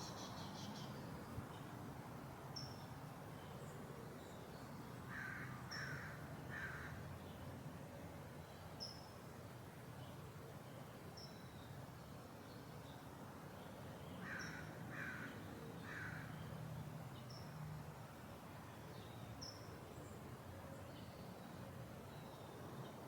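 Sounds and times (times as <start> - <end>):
crow cawing: 5.1 - 6.9, 14.2 - 16.2.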